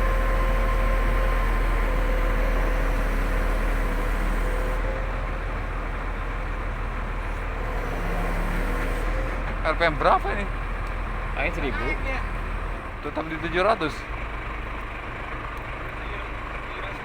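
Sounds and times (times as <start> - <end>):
excavator diesel engine droning: 0.0 - 17.0.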